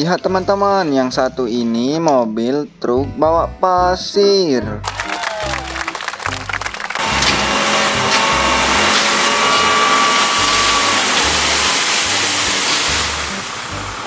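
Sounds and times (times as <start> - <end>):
background music with a beat: 4.8 - 9.1
loud rushing hiss: 7.0 - 14.0.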